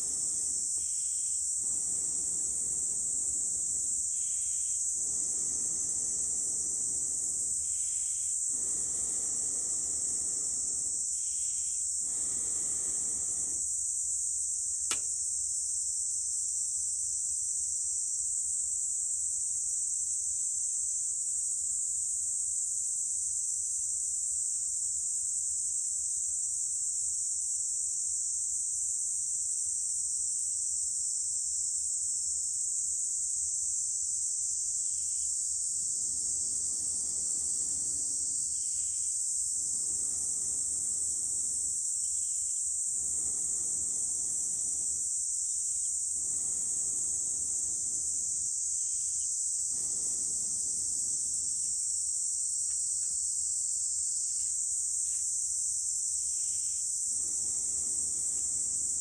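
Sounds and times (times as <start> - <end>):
blowing through a pipe into embers: 0.0 - 13.7, 35.6 - 52.0, 56.2 - 59.0
high insect drone: 0.0 - 59.0.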